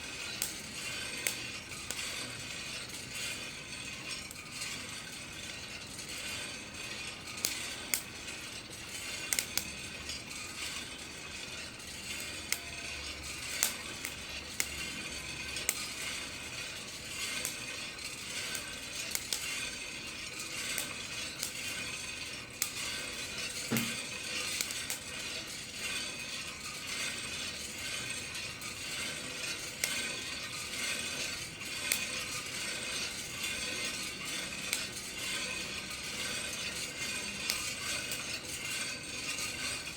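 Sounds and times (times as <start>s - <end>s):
beans rattling in drum: 0.0s - 39.9s
coffee beans popping: 0.3s - 2.0s, 9.0s - 9.7s, 13.4s - 15.0s, 17.2s - 19.6s, 20.4s - 21.8s, 22.5s - 25.2s, 37.2s - 38.3s.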